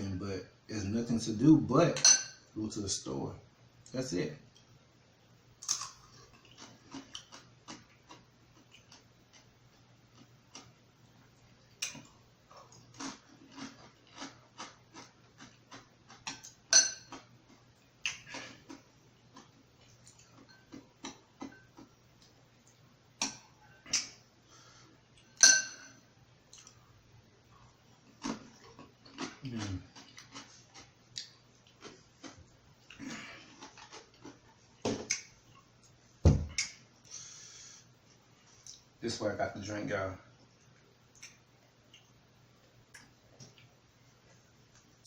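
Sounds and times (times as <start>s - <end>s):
faint low hum: 0.0s - 45.0s
chewing with mouth clicks: 5.6s - 9.5s, 11.8s - 22.8s, 28.1s - 36.0s
utensil clinking against dish: 25.4s - 26.0s.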